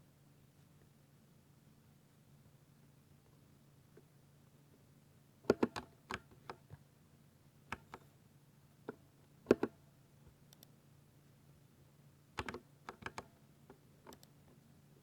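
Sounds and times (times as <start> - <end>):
keyboard key clicks: 12.4 - 13.3.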